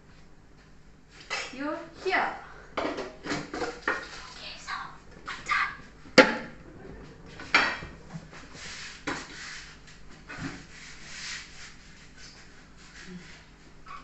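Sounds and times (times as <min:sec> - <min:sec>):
scraping and rubbing noises: 0:03.2 - 0:05.6, 0:06.6 - 0:14.0.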